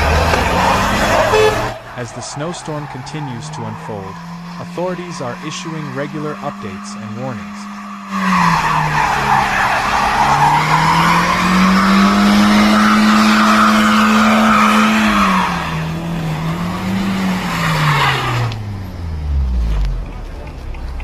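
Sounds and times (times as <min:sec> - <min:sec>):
car engine revving: 0:00.0 - 0:21.0.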